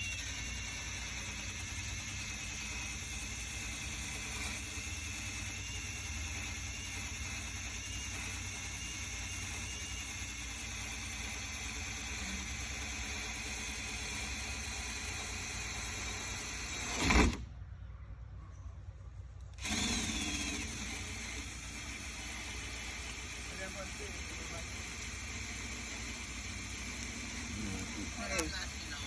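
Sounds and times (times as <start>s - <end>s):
electric sander sanding paint: 19.7s - 29.0s.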